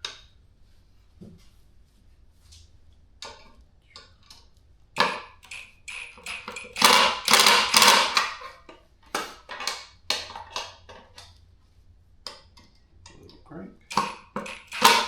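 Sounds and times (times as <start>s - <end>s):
hand tool knocking and scraping: 5.0s - 11.3s, 13.9s - 15.0s.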